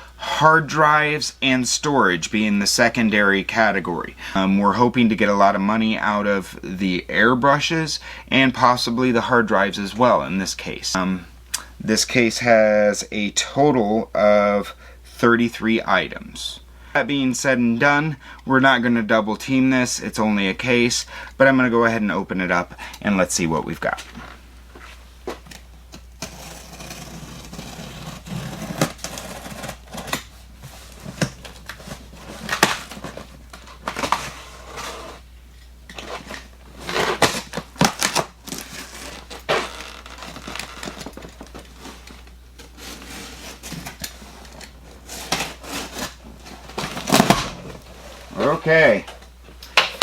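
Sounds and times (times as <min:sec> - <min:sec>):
packing tape crackling: 0:25.5 - 0:35.2, 0:35.9 - 0:47.9.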